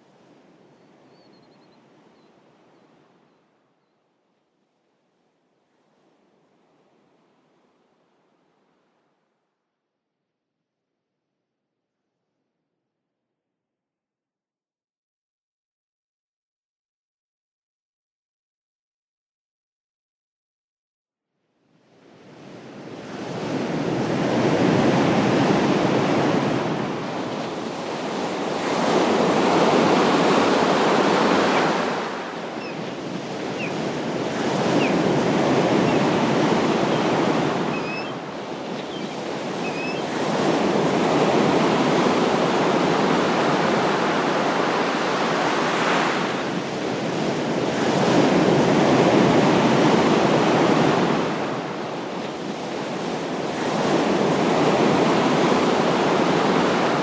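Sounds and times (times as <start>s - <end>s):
ocean waves breaking: 22.2s - 57.0s.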